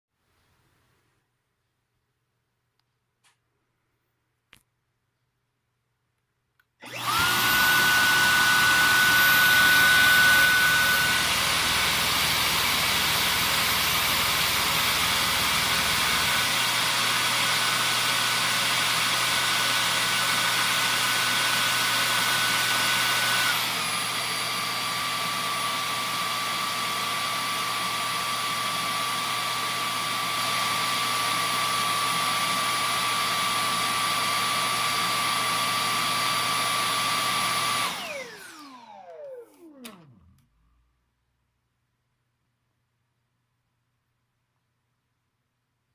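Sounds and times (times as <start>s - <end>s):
vacuum cleaner running: 6.8s - 40.9s.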